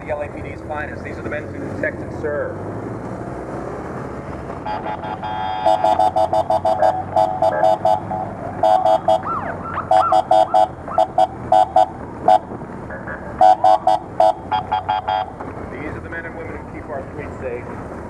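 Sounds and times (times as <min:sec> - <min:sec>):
motorcycle engines running: 0:00.0 - 0:18.0
motorcycle horns blasting: 0:04.6 - 0:12.4, 0:13.4 - 0:15.3
siren whoops: 0:04.7 - 0:12.4.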